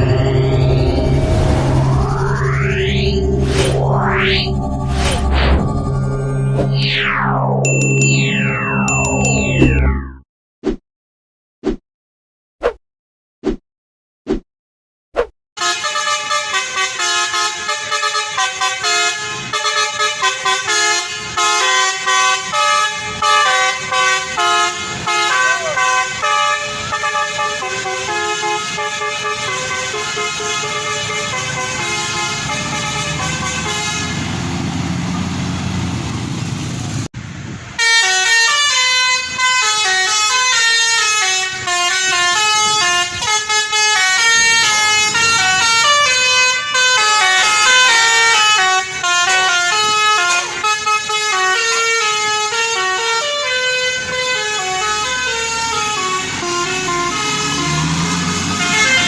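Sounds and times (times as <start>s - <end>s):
bus horn playing a melody: 15.6s - 34.5s, 37.8s - 59.0s.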